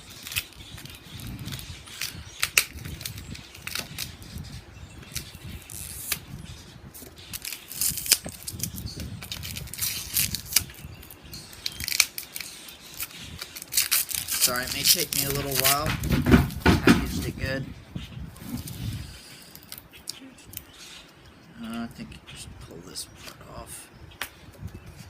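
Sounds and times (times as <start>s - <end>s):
package wrapping crackling: 0.0s - 4.3s, 7.2s - 17.2s.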